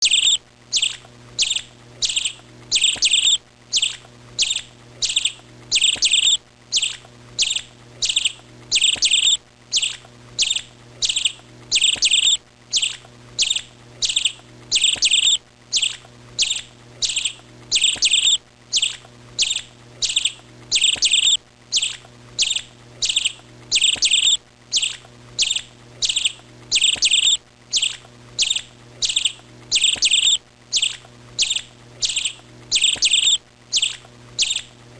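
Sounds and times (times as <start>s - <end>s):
small bird chirping: 0.0s - 34.8s.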